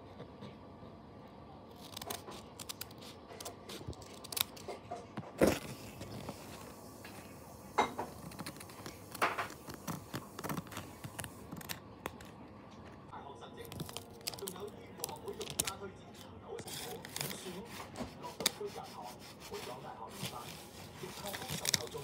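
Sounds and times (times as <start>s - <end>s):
paper scraping: 1.7s - 12.4s, 16.6s - 22.0s
paper crinkling: 1.7s - 22.0s
scratchy stroke on paper: 16.7s - 22.0s.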